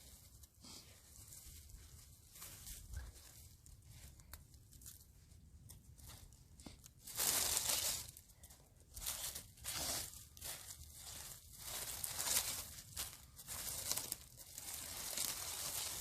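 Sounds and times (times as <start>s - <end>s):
rake scraping through dry leaves: 7.0s - 8.2s, 8.9s - 16.0s.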